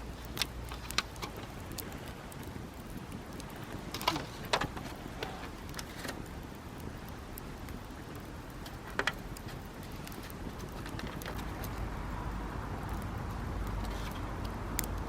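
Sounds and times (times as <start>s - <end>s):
sharp pops of fire: 0.0s - 11.9s
campfire crackling: 0.0s - 15.0s
low background noise: 0.0s - 15.0s.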